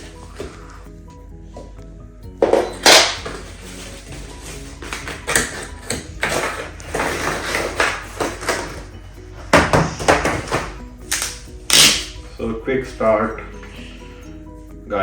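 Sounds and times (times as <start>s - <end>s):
background music: 0.0s - 15.0s
packaging and paper rustling: 2.4s - 9.0s.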